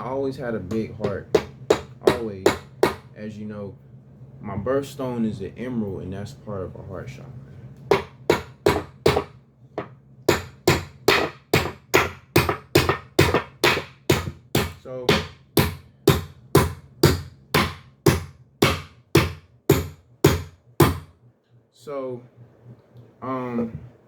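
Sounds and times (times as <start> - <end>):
sharp knocks: 7.9 - 21.1.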